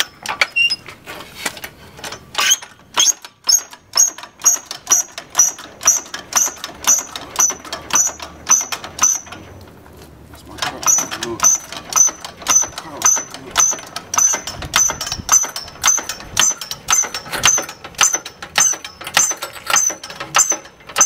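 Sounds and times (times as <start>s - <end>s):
jack metallic clicks with ping: 2.4s - 9.4s, 10.6s - 21.0s.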